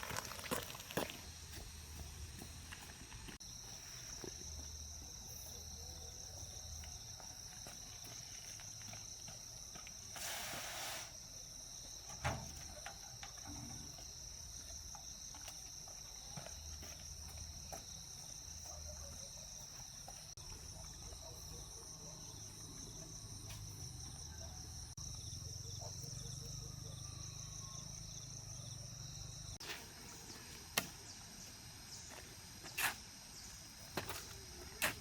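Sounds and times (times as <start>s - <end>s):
insects trilling: 0.0s - 35.0s
short hiss: 10.1s - 11.2s.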